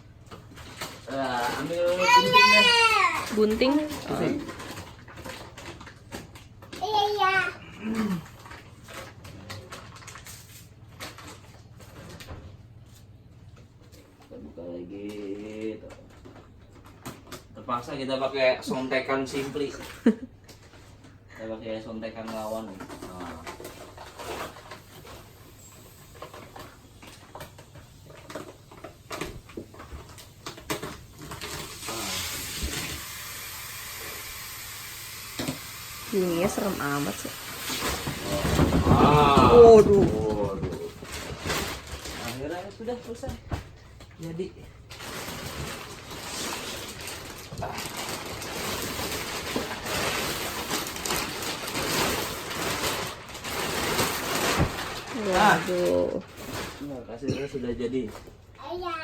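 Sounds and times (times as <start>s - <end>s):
plastic wrapping crackling: 0.1s - 12.3s, 13.8s - 34.5s, 35.9s - 58.8s
plastic packaging crinkling: 0.2s - 6.9s, 7.7s - 12.3s, 21.8s - 34.5s, 36.0s - 43.3s, 43.9s - 57.2s.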